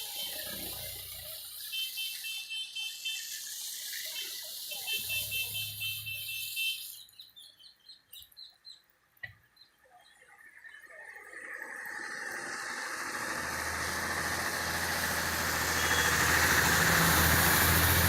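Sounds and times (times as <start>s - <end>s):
hiss: 0.0s - 6.9s, 12.2s - 18.0s
bird chirps: 5.0s - 11.4s.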